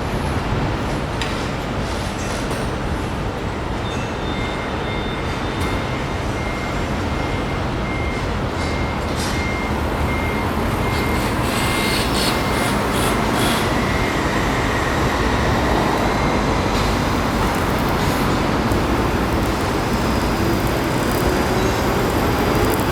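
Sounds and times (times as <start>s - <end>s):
city traffic: 0.0s - 22.9s
rail noise: 0.0s - 22.9s
vehicle whine pulling away: 9.2s - 22.9s.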